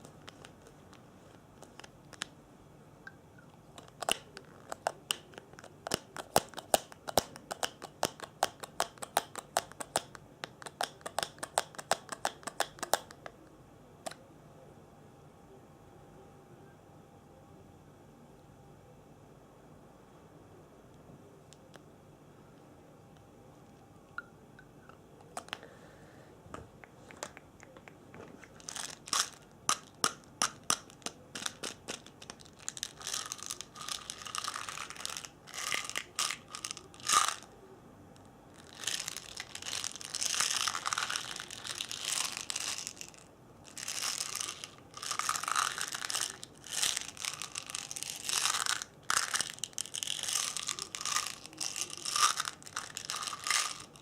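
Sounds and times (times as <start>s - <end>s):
crinkly scratchy rustling: 38.5s - 54.0s.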